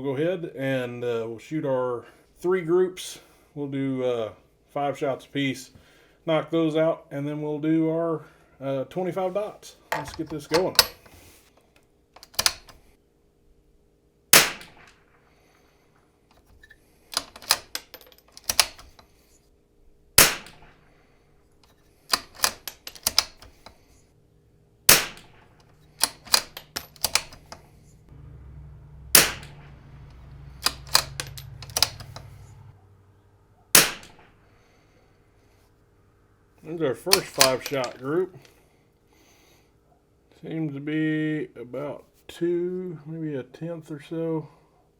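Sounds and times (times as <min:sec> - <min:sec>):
rifle bolt clicking: 0:12.2 - 0:12.8, 0:17.2 - 0:19.0, 0:22.1 - 0:23.6, 0:24.9 - 0:27.6, 0:30.6 - 0:32.4, 0:37.1 - 0:38.0
rifle shots: 0:14.4 - 0:15.0, 0:20.2 - 0:20.8, 0:24.9 - 0:27.4, 0:29.0 - 0:32.7, 0:33.7 - 0:34.4.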